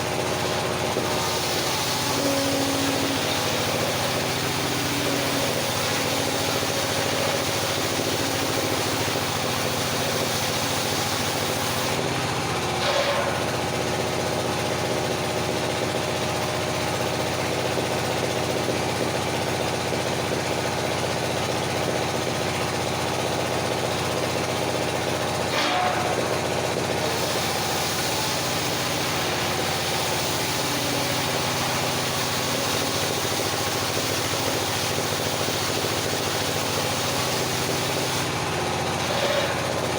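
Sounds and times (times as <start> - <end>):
sawmill machine hum: 0.0 - 39.9.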